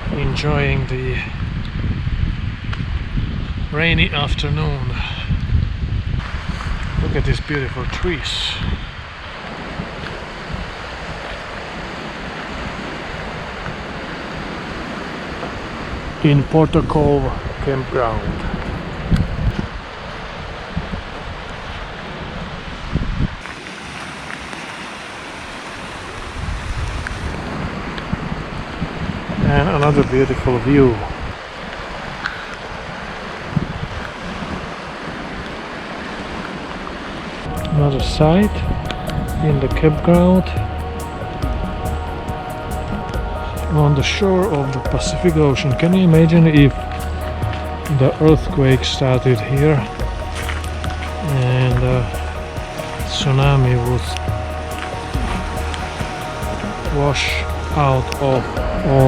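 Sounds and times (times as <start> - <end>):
wind buffeting microphone: 0.0 - 34.7
ocean surf: 0.0 - 59.0
wind rushing: 22.7 - 31.4, 37.4 - 59.0
constant hiss: 22.8 - 31.9, 37.2 - 59.0.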